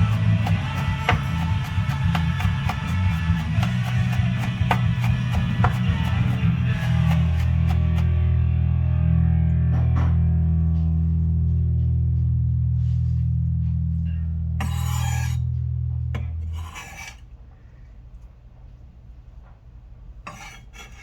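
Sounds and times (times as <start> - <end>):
electric guitar: 5.2 - 11.9.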